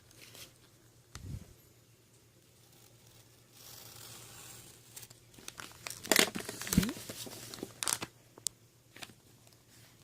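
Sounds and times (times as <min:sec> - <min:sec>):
wrapping rustling: 0:05.4 - 0:08.1.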